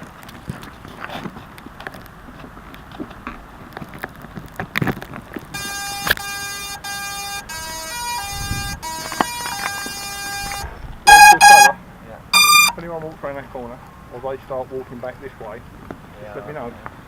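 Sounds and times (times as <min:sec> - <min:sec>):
wind on microphone: 0:08.3 - 0:08.8.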